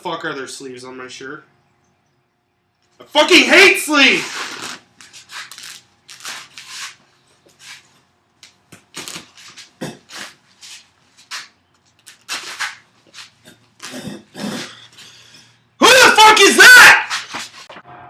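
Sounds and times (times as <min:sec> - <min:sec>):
rustling: 0:04.2 - 0:07.9.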